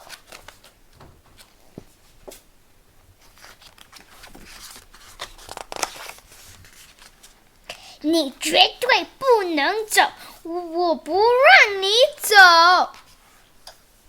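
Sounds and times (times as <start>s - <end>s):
book pages rustling: 0.0s - 2.5s, 3.1s - 7.6s.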